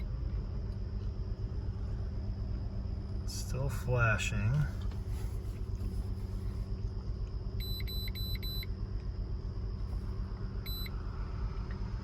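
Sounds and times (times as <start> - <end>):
electronic beeps: 10.7 - 10.9.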